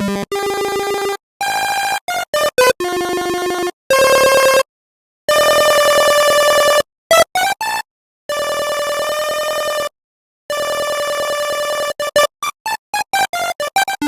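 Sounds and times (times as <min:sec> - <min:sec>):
chiptune synthesizer melody: 0:13.2 - 0:14.0.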